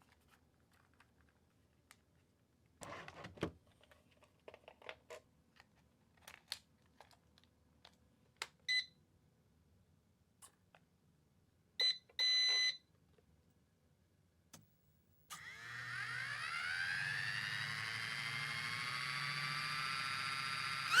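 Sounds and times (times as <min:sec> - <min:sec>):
electric motor whine: 0:15.3 - 0:21.0.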